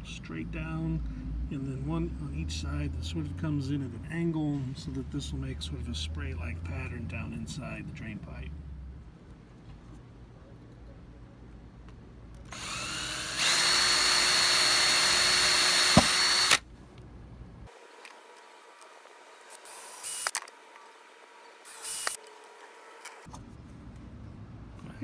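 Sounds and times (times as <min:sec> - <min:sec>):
power drill boring into plastic: 0:12.5 - 0:16.6, 0:19.5 - 0:20.5, 0:21.7 - 0:22.2.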